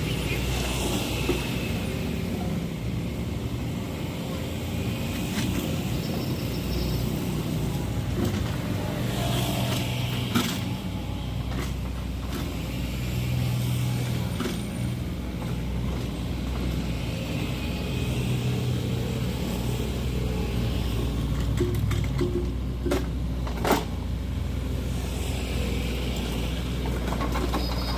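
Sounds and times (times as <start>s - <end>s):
excavator diesel engine running: 0.0s - 27.9s.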